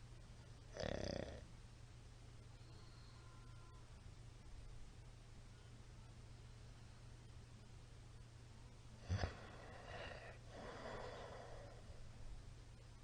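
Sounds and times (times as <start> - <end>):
man snoring: 0.8 - 1.4, 9.0 - 11.8.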